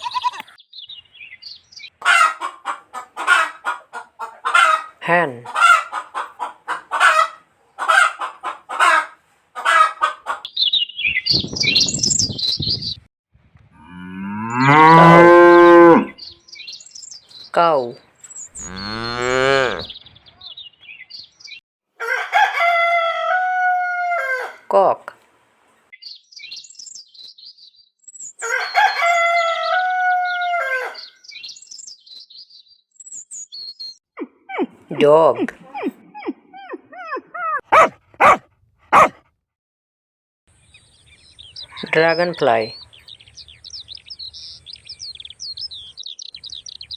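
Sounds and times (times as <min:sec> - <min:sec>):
hen clucking: 0:00.0 - 0:00.6, 0:02.0 - 0:10.5, 0:35.4 - 0:39.2
high bird chirping: 0:00.0 - 0:02.0, 0:10.4 - 0:13.0, 0:35.8 - 0:39.2
rooster crowing: 0:22.0 - 0:24.6, 0:28.4 - 0:31.1, 0:37.7 - 0:39.1.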